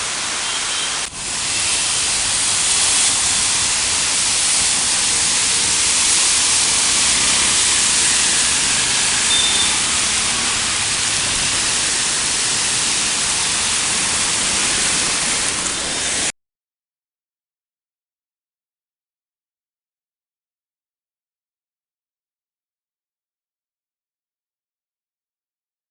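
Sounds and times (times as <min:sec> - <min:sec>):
heavy rain falling: 0:00.0 - 0:16.3.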